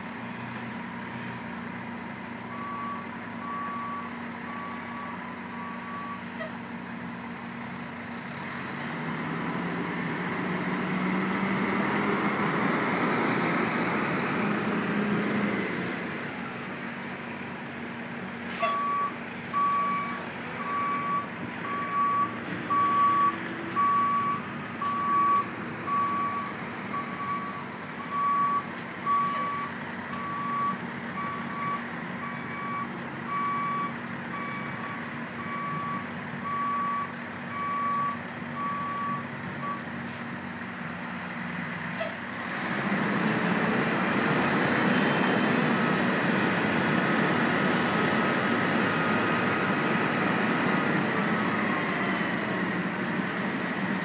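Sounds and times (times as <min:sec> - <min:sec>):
vehicle engine hum: 0:00.0 - 0:54.0
reversing alarm beeping: 0:18.6 - 0:39.8.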